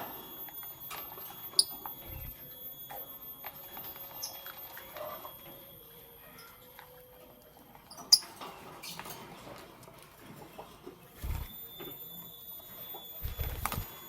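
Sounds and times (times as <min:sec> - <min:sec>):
birds' feet and beaks scratching: 0:07.8 - 0:11.6, 0:13.2 - 0:14.0.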